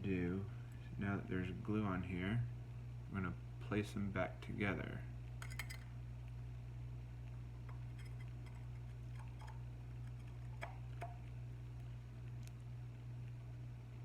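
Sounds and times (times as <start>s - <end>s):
steady low hum: 0.0s - 14.0s
faint clicks and light taps: 7.6s - 12.6s.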